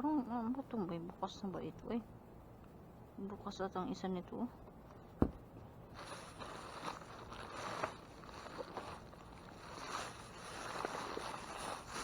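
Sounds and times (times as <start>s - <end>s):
packaging rustling and scraping: 5.9s - 12.0s.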